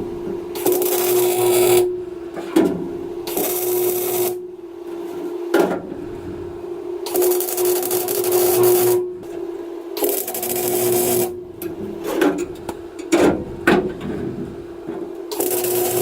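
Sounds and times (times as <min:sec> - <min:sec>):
welder crackling: 0:00.0 - 0:04.5, 0:05.8 - 0:09.3, 0:10.0 - 0:13.7, 0:15.3 - 0:16.0
steady hum: 0:00.0 - 0:16.0.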